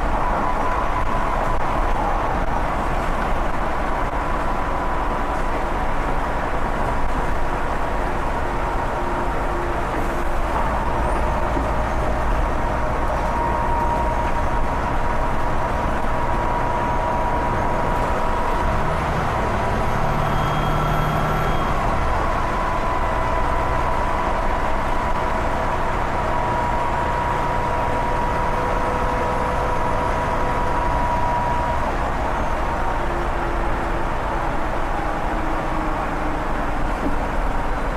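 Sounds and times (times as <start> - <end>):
bus diesel engine drone: 0.0 - 37.9
turbocharger whistle: 19.8 - 22.0.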